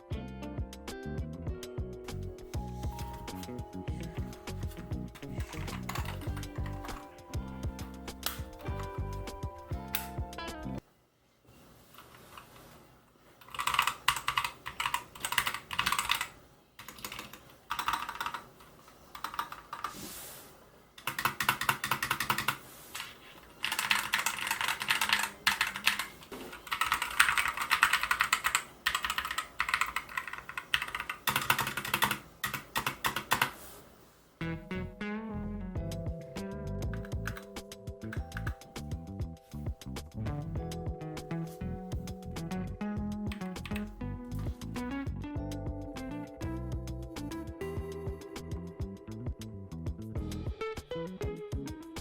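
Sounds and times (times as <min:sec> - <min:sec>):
keyboard typing: 0:02.8 - 0:10.2, 0:13.4 - 0:20.1, 0:21.0 - 0:33.6, 0:36.8 - 0:39.0, 0:43.3 - 0:44.0.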